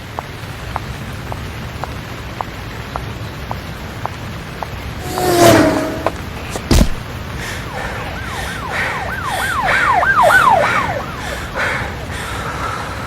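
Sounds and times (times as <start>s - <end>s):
emergency siren yelping: 7.6s - 12.0s.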